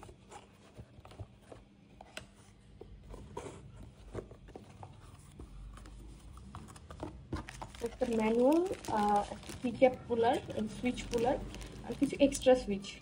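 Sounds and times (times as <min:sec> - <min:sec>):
packaging rustling: 0:03.9 - 0:12.6.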